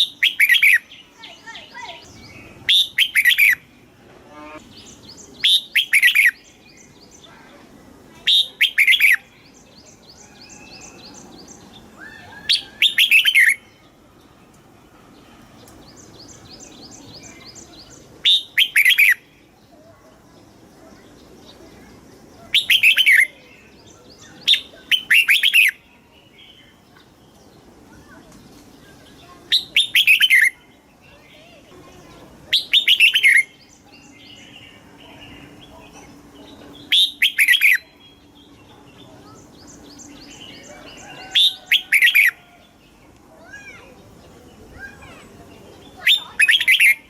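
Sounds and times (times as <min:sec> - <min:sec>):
bird whistled phrases: 0:00.0 - 0:03.6, 0:05.4 - 0:06.4, 0:08.3 - 0:09.3, 0:12.0 - 0:13.8, 0:17.2 - 0:19.2, 0:22.4 - 0:23.4, 0:24.2 - 0:25.8, 0:29.5 - 0:30.6, 0:32.5 - 0:34.4, 0:36.8 - 0:38.0, 0:40.2 - 0:42.4, 0:46.0 - 0:47.0.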